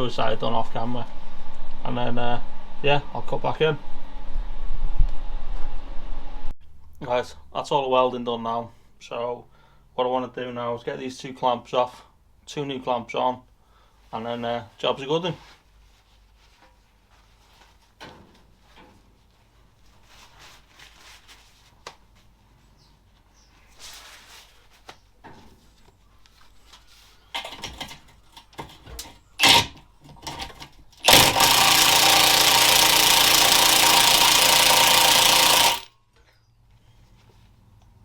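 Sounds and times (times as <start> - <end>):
handheld power tool running: 29.4 - 35.9.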